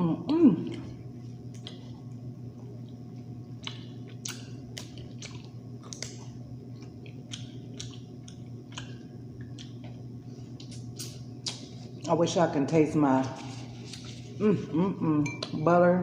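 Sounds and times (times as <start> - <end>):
steady low hum: 0.0 - 16.0
close chewing of seafood: 3.6 - 10.0.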